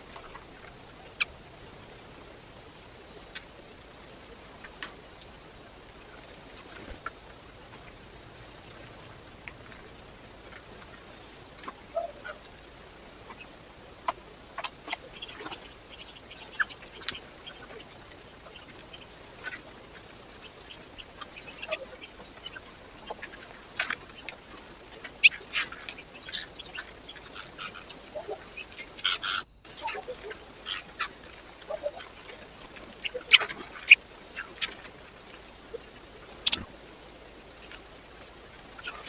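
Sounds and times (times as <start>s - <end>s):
birds tapping at feeder: 4.7s - 5.3s.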